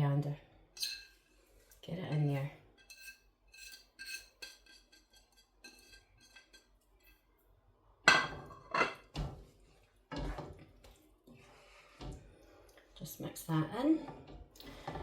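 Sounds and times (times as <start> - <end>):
utensils clinking against pot: 2.1 - 7.2.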